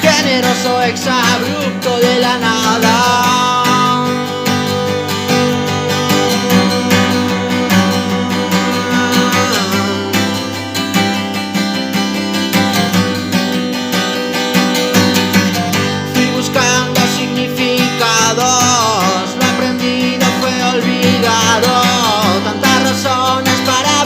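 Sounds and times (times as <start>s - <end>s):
strummed acoustic guitar chords: 0.0s - 24.0s
sliding melodic line: 2.8s - 13.7s.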